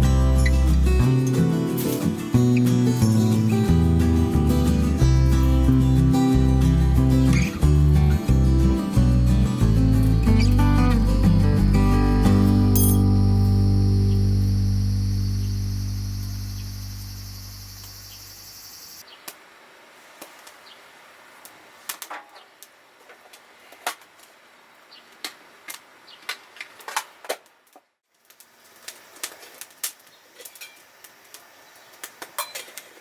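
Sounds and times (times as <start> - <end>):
background music: 0.0 - 16.2
wood fire crackling and popping: 21.4 - 24.4, 25.1 - 33.0.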